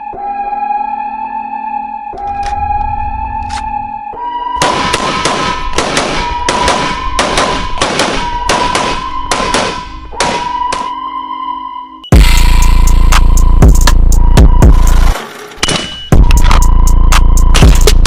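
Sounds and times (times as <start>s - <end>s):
droning synth tone: 0.0s - 4.8s, 6.2s - 15.2s, 16.1s - 18.0s
low rumble: 2.2s - 4.2s
gunshots: 4.6s - 10.9s.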